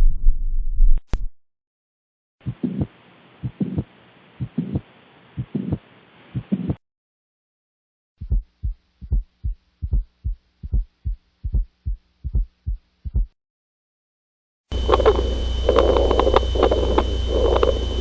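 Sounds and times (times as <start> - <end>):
heartbeat through stethoscope: 2.4 - 6.8, 8.2 - 13.4
steady hum: 14.7 - 18.0.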